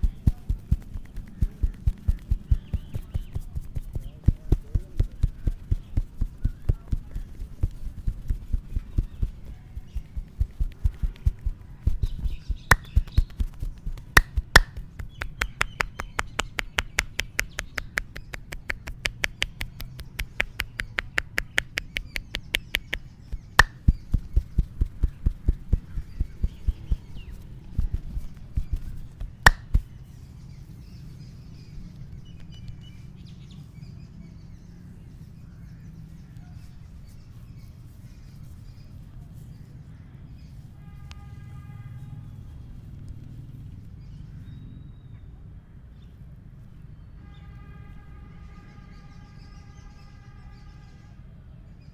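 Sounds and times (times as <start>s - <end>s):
rapid massage hand slaps: 0.0s - 30.0s.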